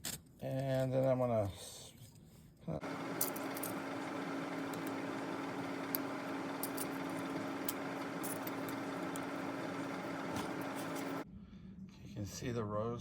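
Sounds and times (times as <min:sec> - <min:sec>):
motor humming: 0:02.8 - 0:11.2.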